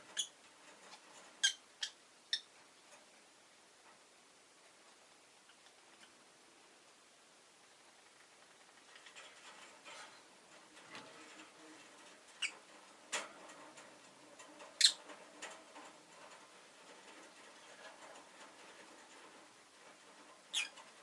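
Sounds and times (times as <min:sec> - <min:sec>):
faint ticks and rustles: 0:00.0 - 0:21.0
lovebird chirping: 0:01.4 - 0:02.5.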